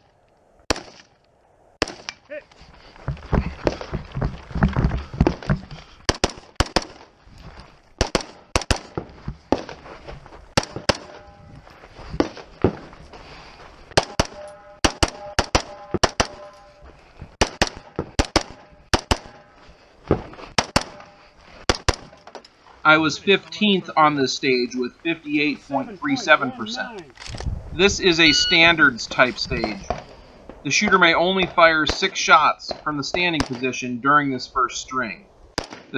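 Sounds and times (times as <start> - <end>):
rifle shots: 0.7 - 1.1, 6.1 - 7.1, 8.0 - 9.8, 10.6 - 11.3, 14.0 - 16.6, 17.4 - 19.5, 20.6 - 22.2, 35.6 - 35.9.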